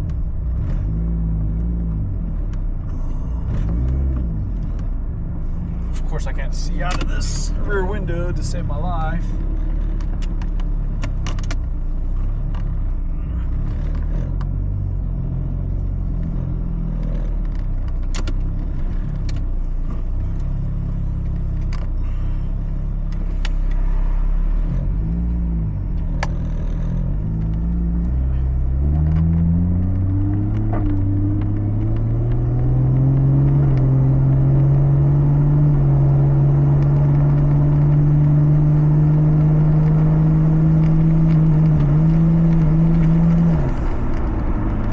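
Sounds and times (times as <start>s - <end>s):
car engine and road rumble: 0.0s - 44.9s.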